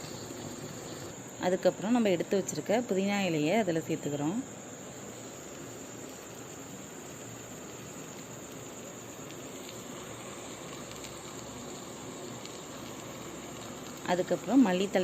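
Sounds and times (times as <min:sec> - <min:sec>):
steady hiss: 0:00.0 - 0:15.0
faint ticks: 0:05.5 - 0:14.6.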